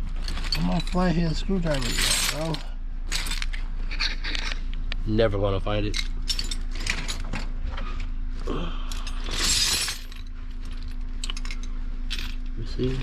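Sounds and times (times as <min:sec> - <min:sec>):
metal hand tools clinking: 0:00.4 - 0:04.6.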